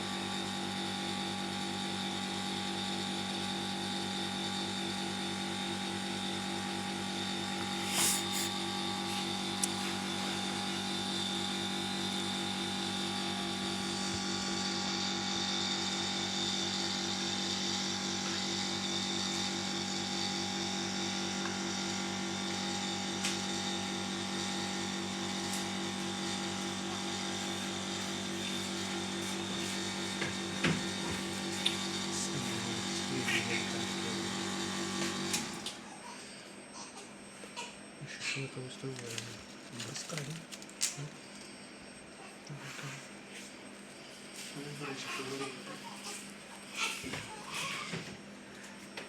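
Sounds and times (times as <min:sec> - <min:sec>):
small electric motor humming: 0:00.0 - 0:35.8.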